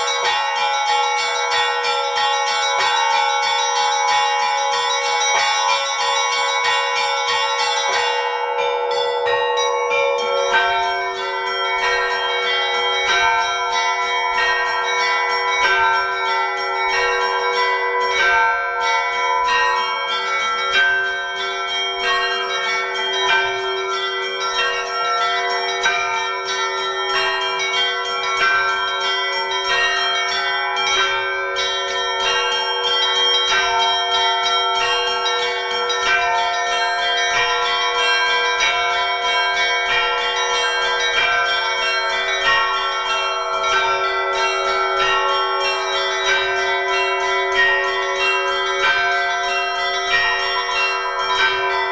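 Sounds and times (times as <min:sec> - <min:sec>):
church bells pealing: 0:00.0 - 0:51.9
rapid strikes on small bells: 0:00.0 - 0:51.9.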